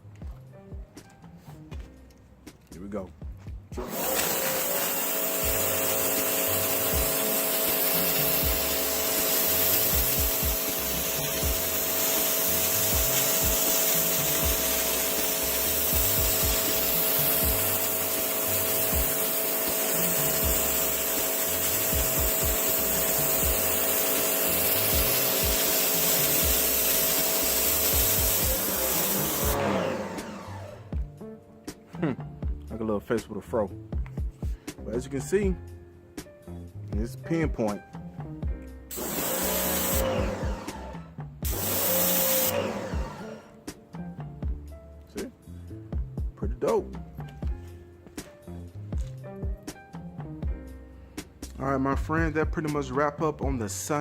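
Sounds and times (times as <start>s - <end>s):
electric motor and pump humming: 3.7s - 31.1s, 38.9s - 43.6s
water jet hissing: 3.8s - 30.5s, 38.9s - 43.5s.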